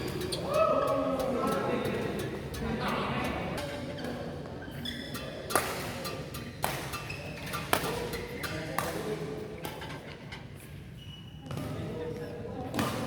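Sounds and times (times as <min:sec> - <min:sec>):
shoe squeaks: 0:00.0 - 0:00.6, 0:03.6 - 0:08.7, 0:10.8 - 0:11.8
racket hitting shuttlecock: 0:05.5 - 0:09.9, 0:12.7 - 0:13.0.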